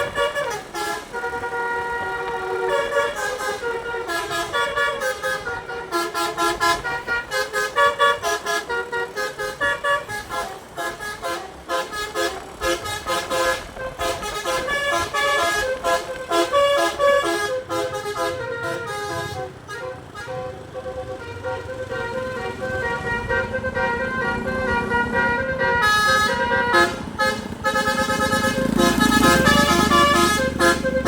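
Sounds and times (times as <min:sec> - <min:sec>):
musical air horn melody: 0:00.0 - 0:31.0.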